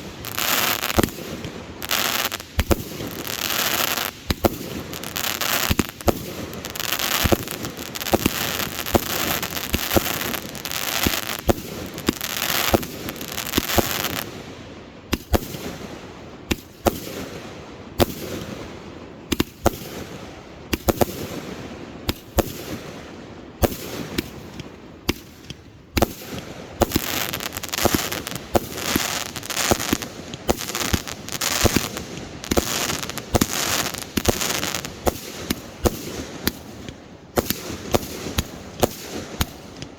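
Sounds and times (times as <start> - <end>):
fireworks bangs: 0.0 - 14.4, 23.6 - 39.9
fireworks crackling: 0.0 - 14.4, 23.6 - 39.9.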